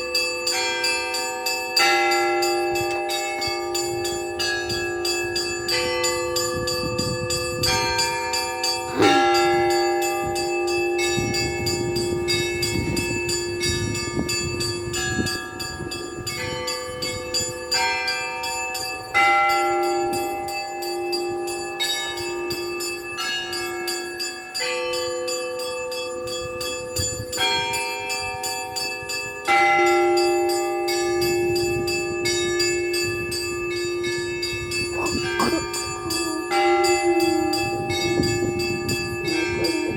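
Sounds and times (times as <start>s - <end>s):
small bells chiming rapidly: 0.0s - 39.9s.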